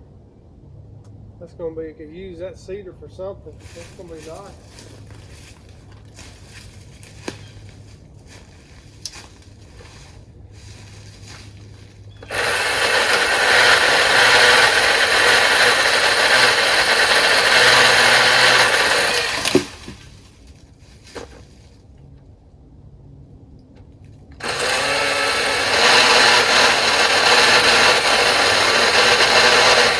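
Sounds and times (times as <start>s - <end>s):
pole saw cutting wood: 12.2s - 20.0s, 24.4s - 29.9s.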